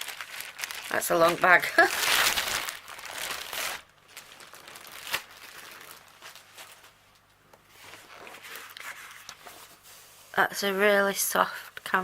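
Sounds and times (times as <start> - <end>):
packaging bag crinkling: 0.0 - 7.0.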